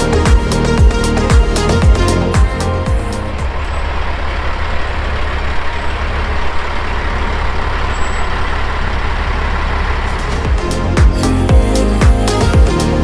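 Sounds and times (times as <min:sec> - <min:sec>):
music: 0:00.0 - 0:03.4, 0:10.1 - 0:13.0
diesel engine rumbling: 0:00.0 - 0:13.0.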